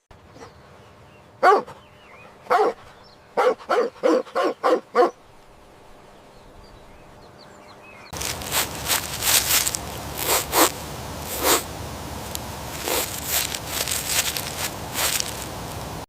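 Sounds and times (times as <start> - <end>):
dog barking: 1.4 - 1.8, 2.5 - 2.8, 3.4 - 5.2.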